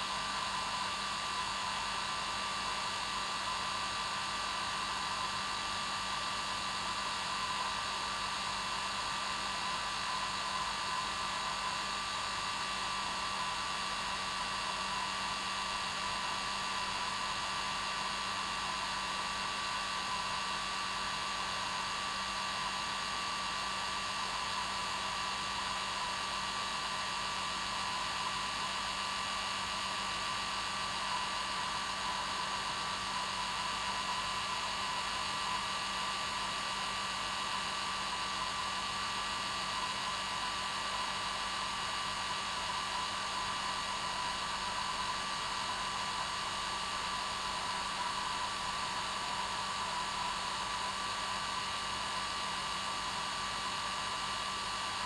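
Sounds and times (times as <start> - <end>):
hair dryer running: 29.5 - 55.0.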